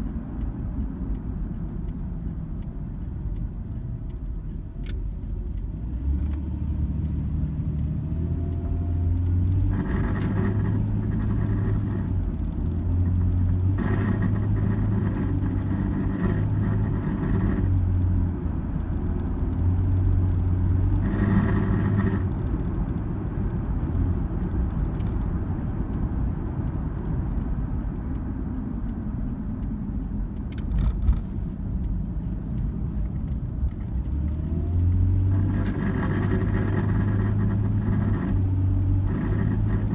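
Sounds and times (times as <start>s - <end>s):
car engine revving: 33.9s - 39.9s.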